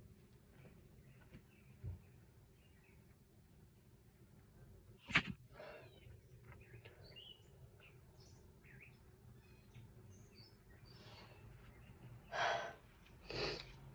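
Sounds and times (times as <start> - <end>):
faint bird chirps: 5.1 - 12.8.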